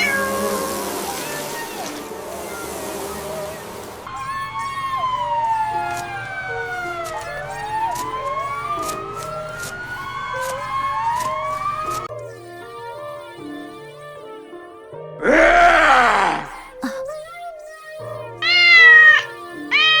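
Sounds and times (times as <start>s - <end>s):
siren wailing: 0.0s - 12.1s
background music: 0.0s - 20.0s.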